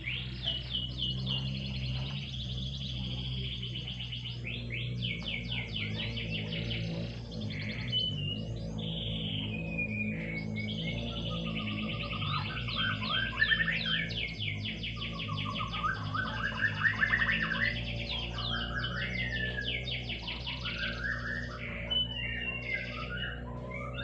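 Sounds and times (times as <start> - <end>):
canary singing trills: 0.0 - 24.0
low steady tones: 0.0 - 24.0.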